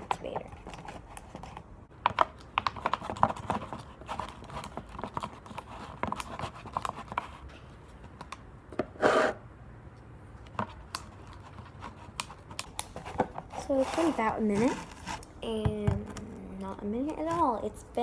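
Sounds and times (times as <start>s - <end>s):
tool stirring slime in cup: 10.6s - 15.7s.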